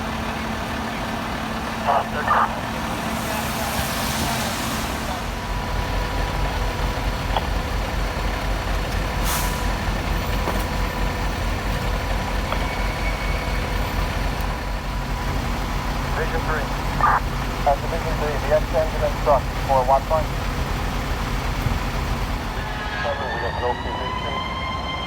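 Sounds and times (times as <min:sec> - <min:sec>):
diesel truck engine rumbling: 0:00.0 - 0:25.0
air brake hiss: 0:09.2 - 0:09.8.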